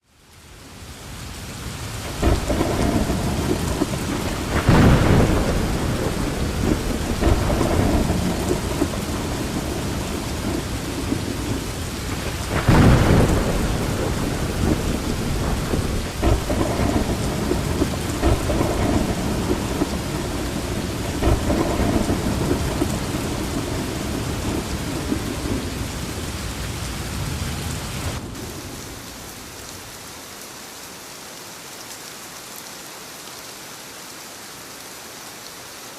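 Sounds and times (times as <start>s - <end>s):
rain falling: 0.0s - 35.9s
rolling thunder: 2.0s - 29.3s.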